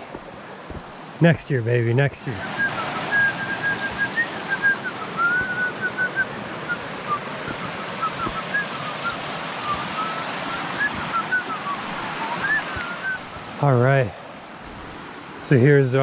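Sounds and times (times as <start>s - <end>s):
rocky creek water rushing: 0.0s - 16.0s
high whistled bird chirps: 2.5s - 13.4s.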